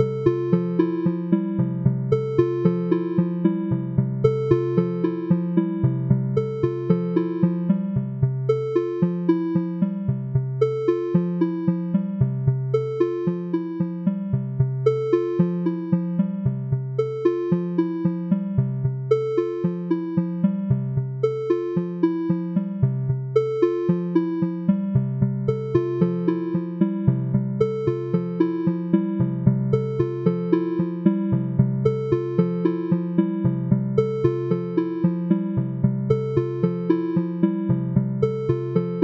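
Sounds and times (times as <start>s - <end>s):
electric piano pattern: 14.8s - 39.0s.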